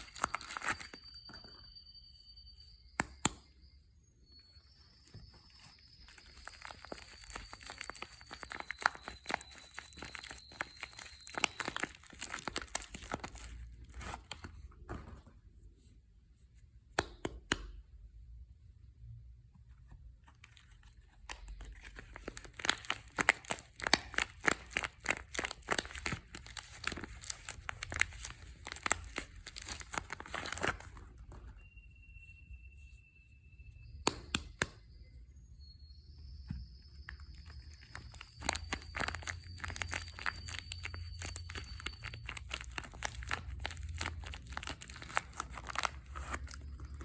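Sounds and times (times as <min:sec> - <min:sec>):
packaging crackling and rustling: 0:00.0 - 0:01.7, 0:05.0 - 0:15.3, 0:20.2 - 0:31.6, 0:36.9 - 0:47.0.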